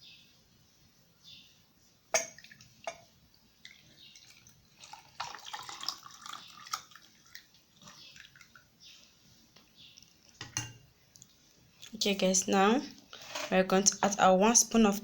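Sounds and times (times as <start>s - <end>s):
liquid pouring and splashing: 2.2s - 8.7s.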